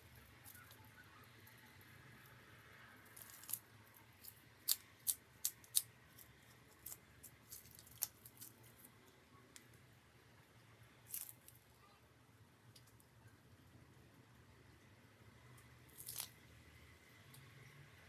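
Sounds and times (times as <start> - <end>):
sharp clicks and snips: 3.2 - 8.8.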